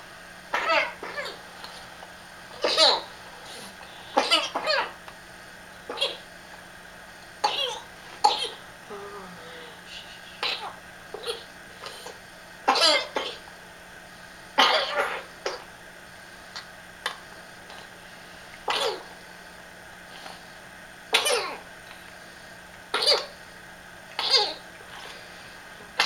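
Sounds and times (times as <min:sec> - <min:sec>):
person coughing harshly: 0:02.6 - 0:03.1, 0:04.1 - 0:04.9, 0:07.4 - 0:08.6, 0:10.4 - 0:11.5, 0:12.7 - 0:13.4, 0:14.6 - 0:15.6, 0:18.7 - 0:19.1, 0:21.1 - 0:21.6, 0:22.9 - 0:23.3, 0:24.2 - 0:24.6.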